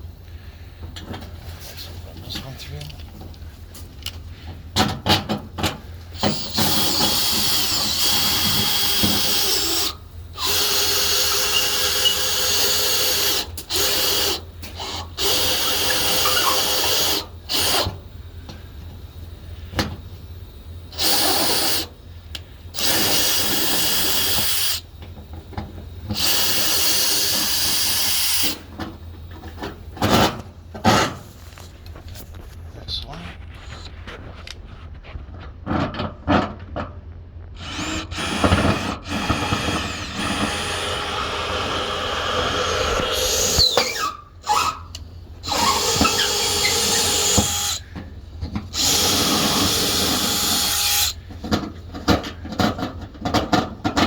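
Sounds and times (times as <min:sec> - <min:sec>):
power drill running: 0:06.2 - 0:18.0, 0:20.9 - 0:22.0, 0:22.7 - 0:24.9, 0:26.1 - 0:28.7, 0:37.6 - 0:48.0, 0:48.7 - 0:51.2.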